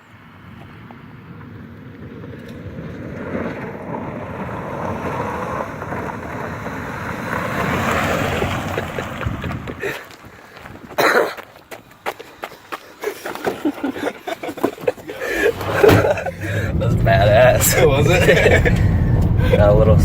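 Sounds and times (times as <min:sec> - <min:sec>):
road noise: 0:00.0 - 0:20.0
car engine accelerating: 0:00.1 - 0:09.8, 0:15.0 - 0:20.0.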